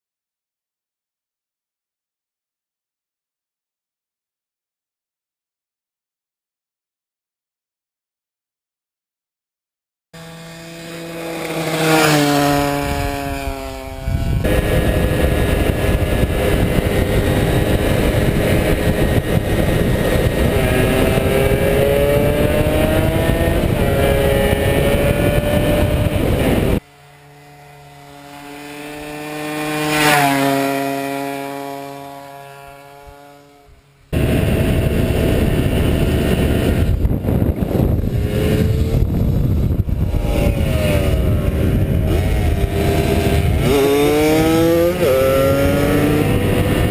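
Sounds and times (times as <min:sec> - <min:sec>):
motorcycle engine revving: 0:10.2 - 0:46.9
motorcycle passing by: 0:10.2 - 0:46.9.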